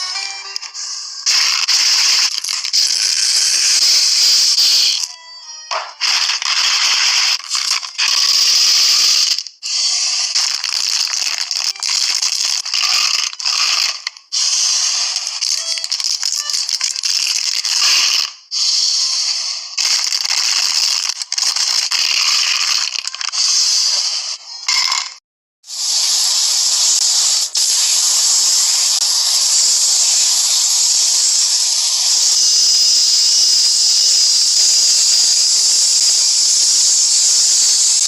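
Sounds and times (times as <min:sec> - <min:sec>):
slime crackling and popping: 0:10.0 - 0:14.2, 0:15.1 - 0:18.2.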